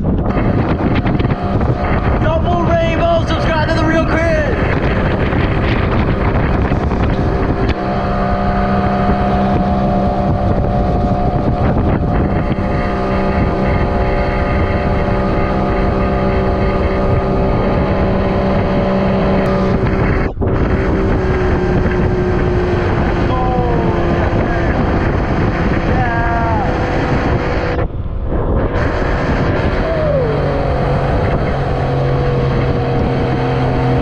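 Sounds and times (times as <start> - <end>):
boat motor droning: 0.0 - 34.0
wind buffeting microphone: 0.0 - 34.0.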